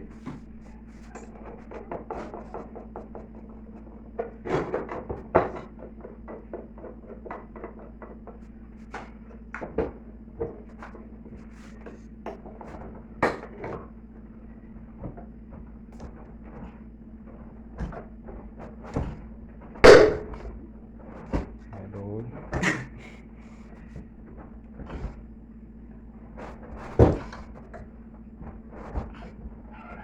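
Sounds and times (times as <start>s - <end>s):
hand tools knocking and scraping: 0.0s - 14.0s, 14.6s - 25.3s
steady low hum: 0.0s - 30.0s.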